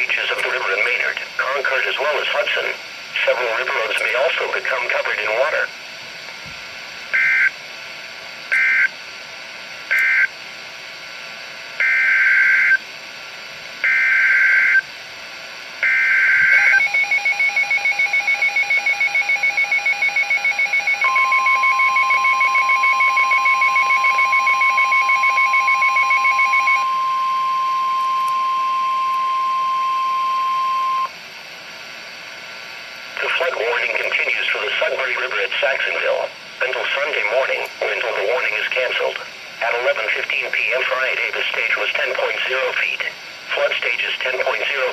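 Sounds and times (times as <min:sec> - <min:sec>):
pulsing two-tone attention signal: 0:15.8 - 0:31.1.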